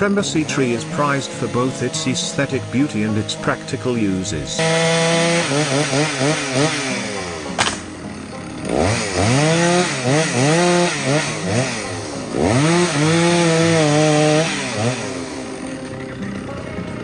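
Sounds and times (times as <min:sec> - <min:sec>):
chainsaw revving: 0:00.0 - 0:17.0.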